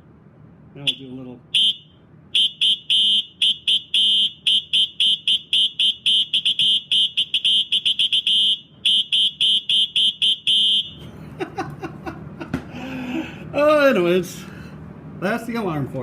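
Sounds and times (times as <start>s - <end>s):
fire alarm horn blasts: 0.8s - 11.1s.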